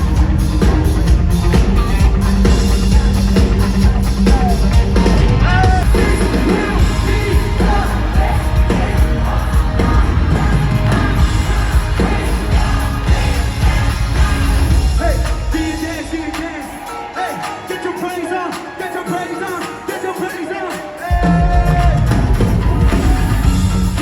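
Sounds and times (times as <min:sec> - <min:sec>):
heavy bass beat: 0:00.0 - 0:16.7
pop music with singing: 0:00.0 - 0:24.0.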